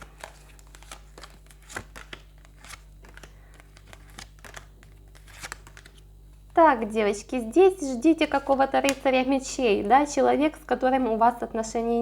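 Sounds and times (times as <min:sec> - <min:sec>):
cards clicking and rustling: 0:00.0 - 0:06.4
faint low hum: 0:00.0 - 0:12.0.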